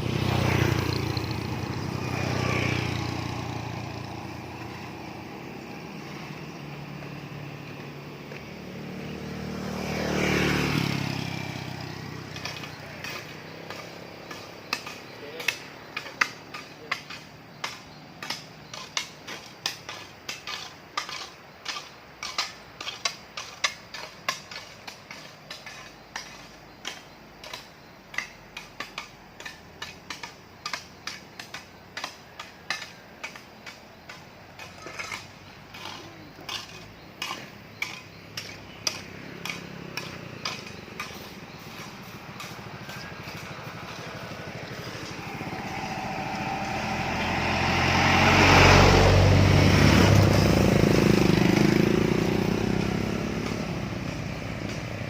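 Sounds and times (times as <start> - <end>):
motor vehicle approaching: 0.0 - 55.0
hand tools striking stone: 12.2 - 48.1.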